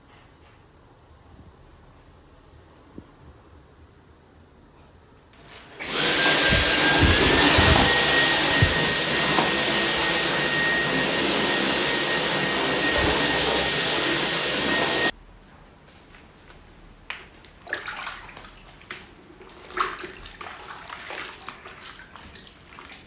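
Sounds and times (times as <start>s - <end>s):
appliance motor whining and rushing: 5.4s - 15.1s.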